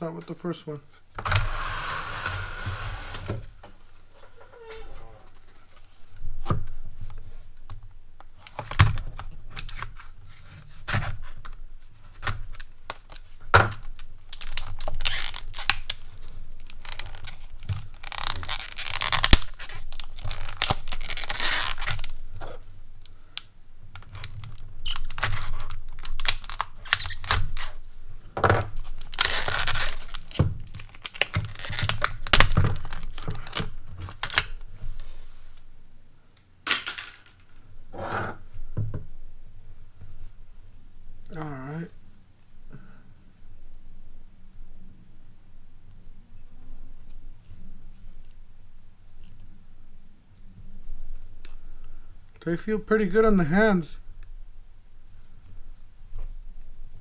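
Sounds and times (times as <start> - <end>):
tearing and crinkling packaging: 12.2 - 23.2, 24.0 - 27.8, 28.7 - 34.6.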